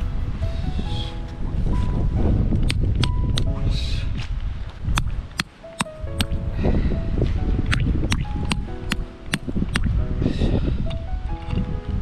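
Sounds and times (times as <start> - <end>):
steady low rumble: 0.0 - 5.4, 6.0 - 12.0
background music with ticking beat: 2.6 - 3.5, 5.4 - 6.4, 7.3 - 10.0.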